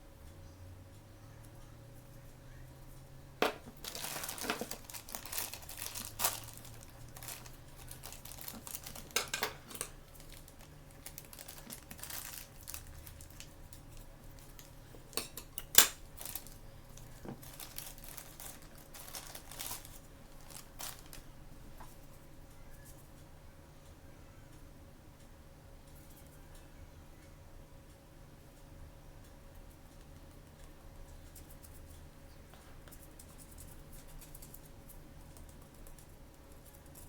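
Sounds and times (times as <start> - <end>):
plastic packaging crinkling: 3.4 - 21.4.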